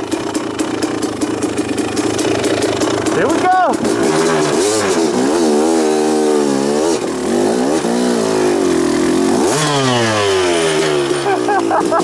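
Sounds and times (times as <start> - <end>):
dirt bike engine revving: 0.0 - 12.0.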